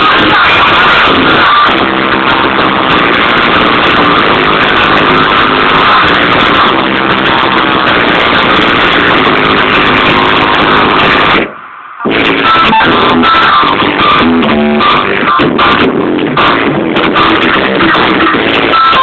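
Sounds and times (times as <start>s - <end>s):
distorted car audio music: 0.0s - 19.0s.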